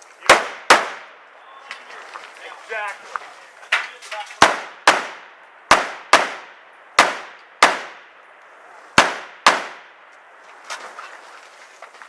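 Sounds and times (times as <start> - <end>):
rifle shots with echo: 0.3 - 1.2, 4.4 - 8.1, 9.0 - 9.9.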